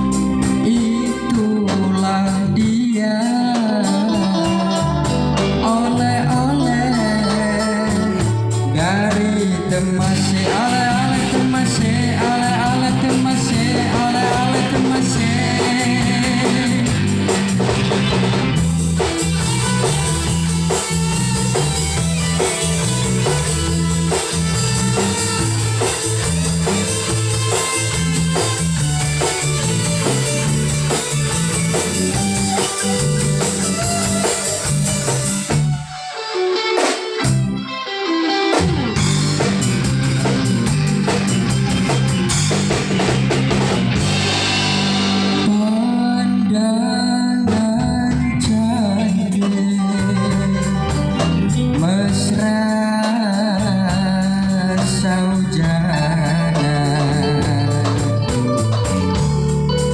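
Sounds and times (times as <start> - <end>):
band playing pop music: 0.0 - 59.9
drum hits: 38.6 - 46.1.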